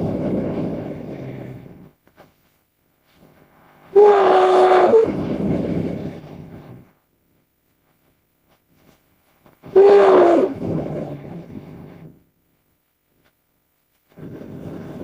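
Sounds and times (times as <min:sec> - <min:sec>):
dinosaur bellowing call: 0:03.9 - 0:05.3, 0:09.7 - 0:10.6.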